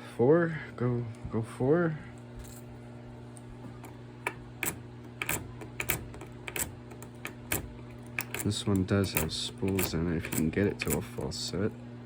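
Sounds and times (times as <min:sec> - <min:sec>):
lock pick clicking in padlock: 0:04.6 - 0:11.0.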